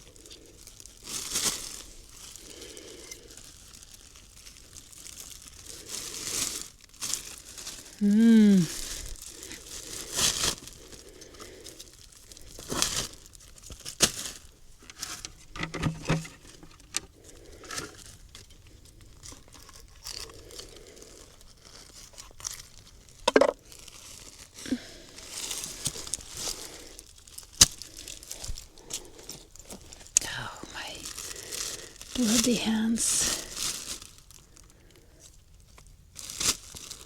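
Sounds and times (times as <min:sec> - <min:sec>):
plastic bags crinkling: 0:00.0 - 0:37.0.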